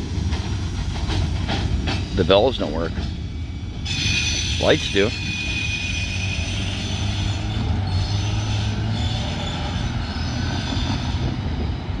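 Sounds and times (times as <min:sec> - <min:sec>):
train wheels rumbling on rail: 0:00.0 - 0:12.0
high wheel squeal: 0:03.3 - 0:11.4.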